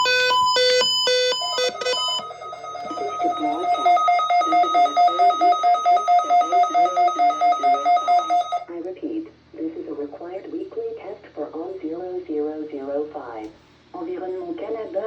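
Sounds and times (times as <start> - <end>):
short electronic beeps: 0.0 - 8.6
two-tone pulsing alarm: 0.0 - 8.7.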